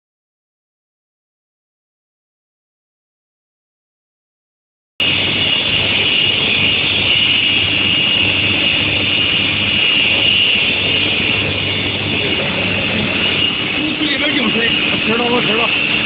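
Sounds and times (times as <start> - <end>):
industrial furnace hum and whine: 5.0 - 16.0.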